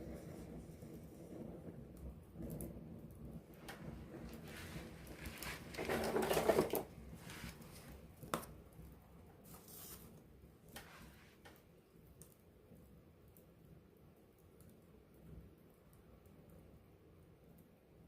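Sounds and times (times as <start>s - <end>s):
rushing swell of fire: 0.0s - 8.2s
campfire crackling and popping: 0.0s - 13.6s.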